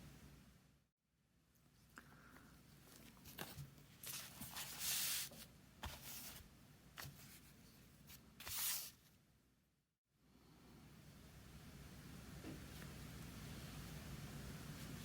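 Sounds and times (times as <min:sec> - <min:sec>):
brush swishing across paper: 0:03.3 - 0:09.1.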